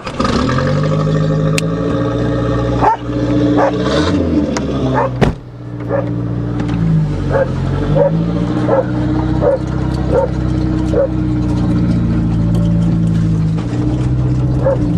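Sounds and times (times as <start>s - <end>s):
car engine running: 0.0s - 14.9s
dog yipping: 2.8s - 3.0s, 3.6s - 3.8s, 5.0s - 5.2s, 5.9s - 6.2s, 7.3s - 11.2s, 14.6s - 14.9s.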